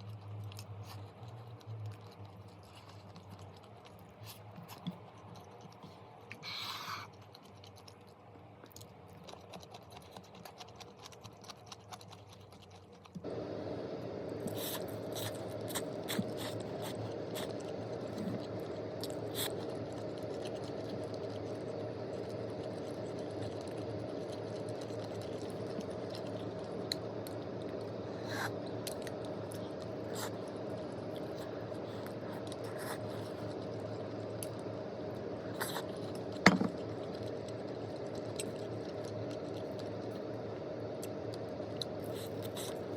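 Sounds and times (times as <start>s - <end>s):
machine hum: 13.2s - 42.9s.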